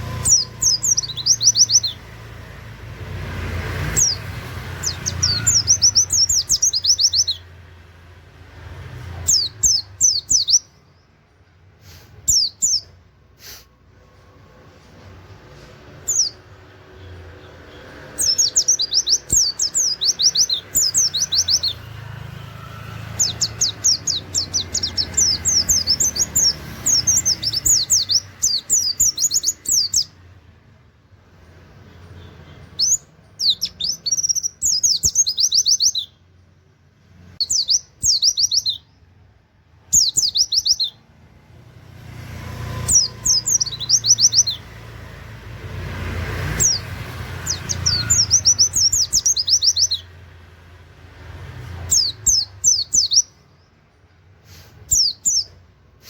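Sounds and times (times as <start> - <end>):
white-eye singing rapid song: 0.0 - 8.3, 15.9 - 30.5, 31.4 - 36.5, 39.7 - 55.7.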